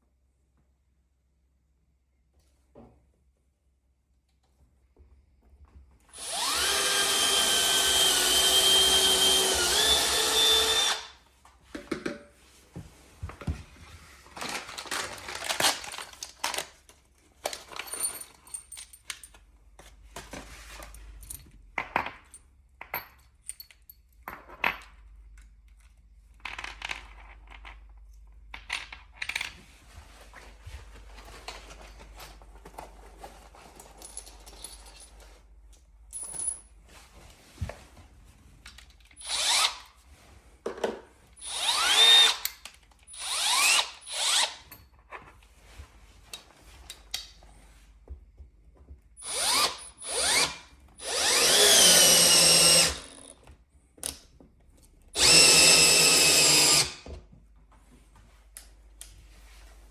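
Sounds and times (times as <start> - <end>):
power drill running: 6.1 - 11.1, 39.2 - 39.8, 41.4 - 42.5, 43.1 - 44.6, 49.2 - 53.3, 55.2 - 57.0.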